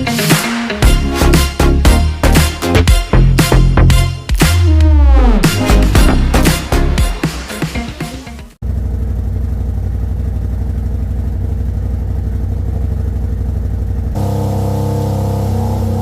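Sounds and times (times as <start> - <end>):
vehicle engine idling: 8.6 - 16.0.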